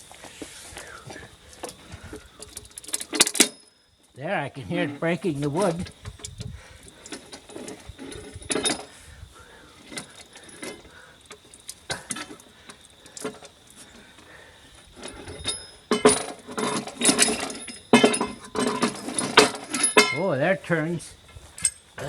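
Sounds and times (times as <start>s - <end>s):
metallic clinking and clattering: 15.0s - 20.2s.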